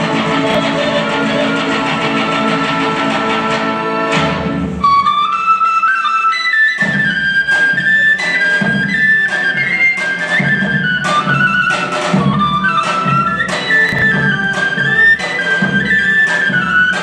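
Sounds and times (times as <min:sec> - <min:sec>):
woodwind melody: 0:00.0 - 0:17.0
steady drum beat: 0:13.9 - 0:15.2.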